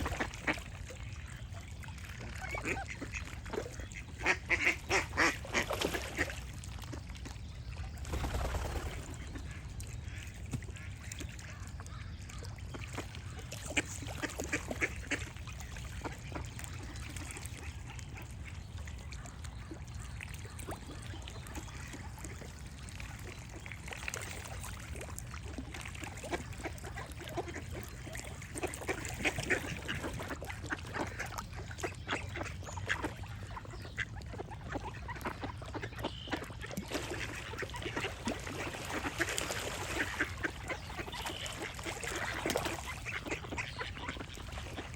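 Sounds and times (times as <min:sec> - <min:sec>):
duck quacking: 0:04.2 - 0:05.6.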